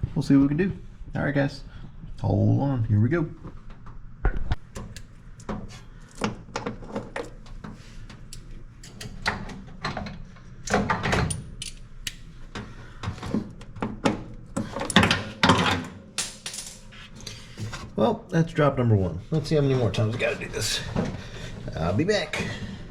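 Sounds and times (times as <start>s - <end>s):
tools clicking and knocking: 4.7s - 12.2s, 13.6s - 16.8s.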